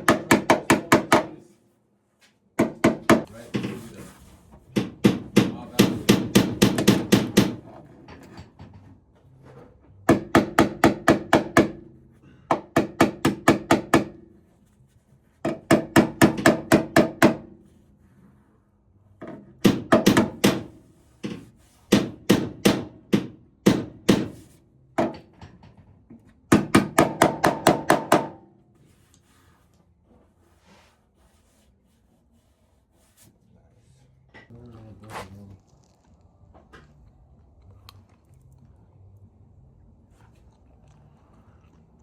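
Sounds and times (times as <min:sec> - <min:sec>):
hammer striking sheet metal: 0:04.8 - 0:07.6, 0:19.6 - 0:25.2.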